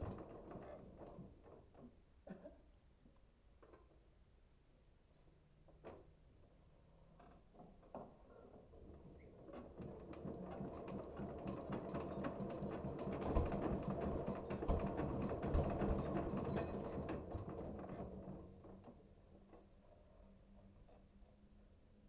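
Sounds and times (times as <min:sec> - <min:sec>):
hard parts clicking and rattling: 0:09.5 - 0:19.0.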